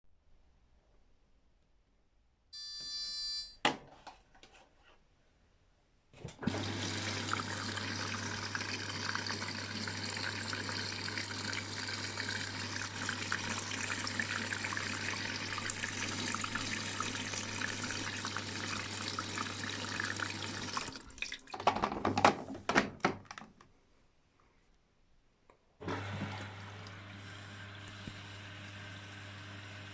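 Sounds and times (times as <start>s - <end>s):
water rushing in: 6.4s - 21.5s.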